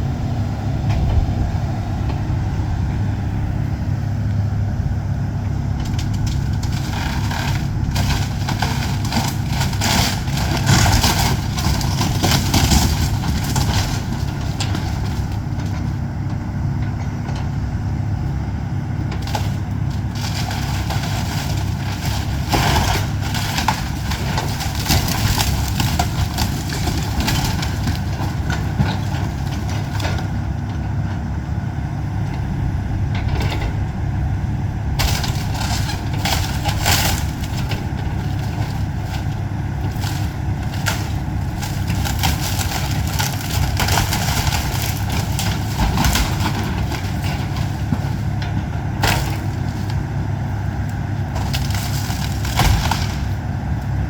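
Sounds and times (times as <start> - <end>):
excavator diesel engine running: 0.0 - 54.0
house crackling and crunching: 0.0 - 54.0.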